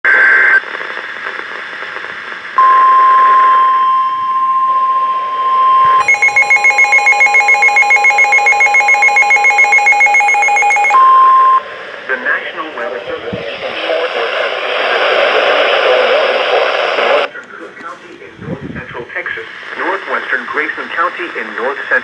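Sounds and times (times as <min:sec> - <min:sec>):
pulsing electronic alarm beeping: 0:04.8 - 0:11.6
data burst: 0:06.0 - 0:11.6
steady alert tone: 0:06.0 - 0:11.6
radio hiss: 0:11.7 - 0:22.0.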